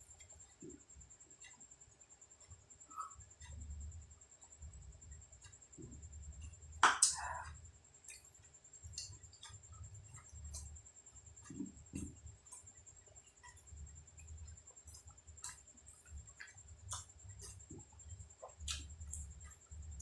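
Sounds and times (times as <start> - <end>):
chewing food: 7.4 - 20.0.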